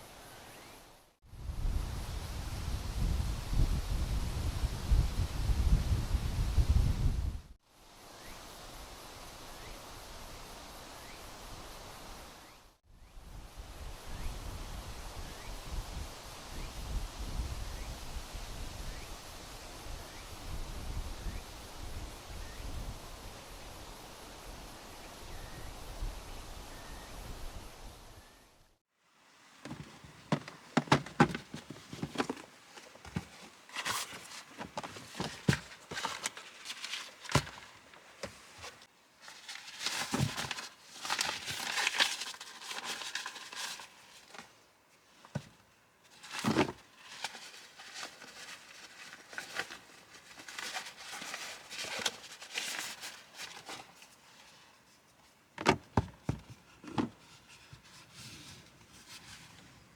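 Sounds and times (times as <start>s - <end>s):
rustling and crinkling: 29.4s - 59.9s
handling knocks and clicks: 29.6s - 43.4s, 55.6s - 57.2s.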